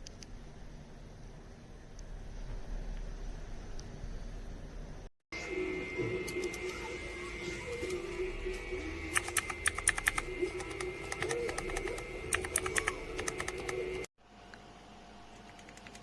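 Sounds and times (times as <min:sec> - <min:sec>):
mechanical keyboard typing: 0:09.1 - 0:14.0, 0:15.4 - 0:16.0.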